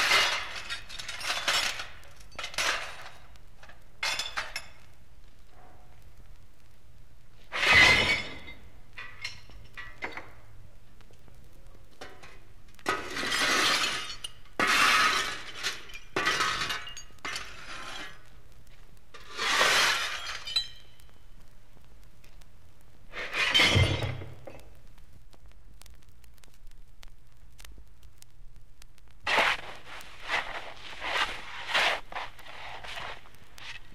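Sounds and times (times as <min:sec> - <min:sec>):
scrap metal crashing and jangling: 0:00.0 - 0:03.2, 0:12.9 - 0:18.1, 0:19.2 - 0:20.8.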